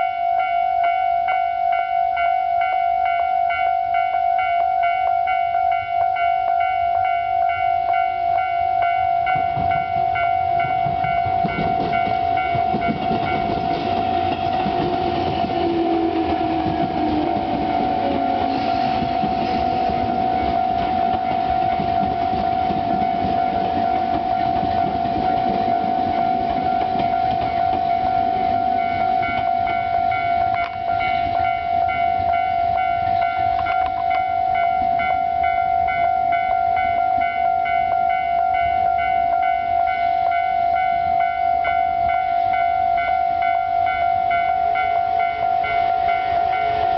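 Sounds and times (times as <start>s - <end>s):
level crossing warning bell: 0.0s - 46.9s
train running noise: 0.0s - 46.9s
sliding whine: 9.4s - 35.6s.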